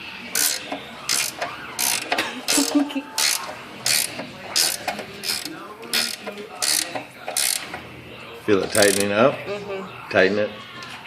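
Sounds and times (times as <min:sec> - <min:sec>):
ratchet wrench clicking: 0:00.4 - 0:07.8, 0:08.7 - 0:09.1.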